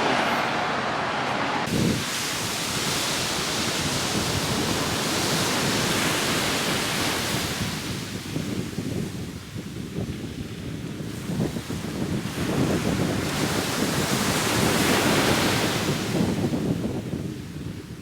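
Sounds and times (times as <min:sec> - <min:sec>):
wind rushing: 0:00.0 - 0:06.1
water rushing: 0:00.0 - 0:07.2.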